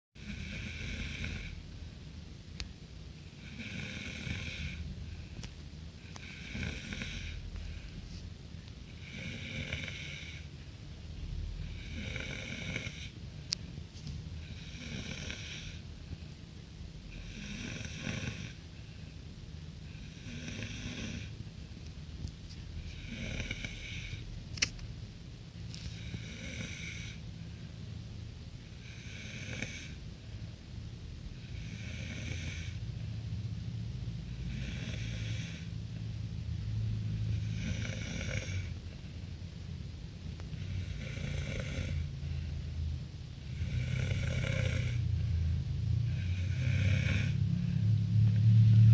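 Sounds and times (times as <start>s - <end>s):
person snoring: 0.2s - 1.6s, 3.4s - 5.2s, 6.0s - 8.0s, 8.9s - 10.5s, 11.6s - 13.2s, 14.4s - 15.8s, 17.1s - 18.6s, 19.9s - 21.4s, 22.8s - 24.3s, 25.8s - 27.2s, 28.7s - 30.0s, 31.4s - 32.8s, 34.3s - 35.7s, 37.1s - 38.8s, 40.6s - 42.2s, 43.4s - 48.9s
steady low hum: 0.2s - 48.9s.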